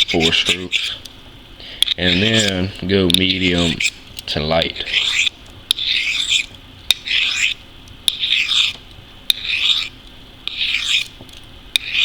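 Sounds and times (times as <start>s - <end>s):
knife scraping on sharpening steel: 0.0s - 1.1s, 1.8s - 2.6s, 3.2s - 4.0s, 4.8s - 11.2s, 11.8s - 12.0s.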